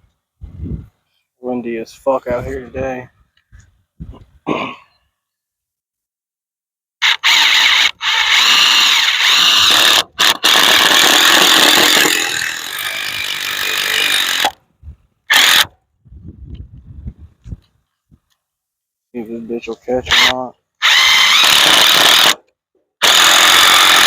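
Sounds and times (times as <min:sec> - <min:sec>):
power drill running: 0:07.0 - 0:14.6, 0:15.3 - 0:15.7, 0:20.1 - 0:22.4, 0:23.0 - 0:24.0.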